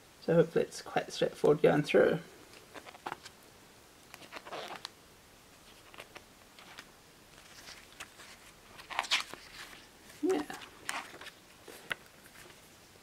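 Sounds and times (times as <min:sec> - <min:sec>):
paper and cardboard rustling: 0:02.7 - 0:03.3, 0:05.6 - 0:12.8.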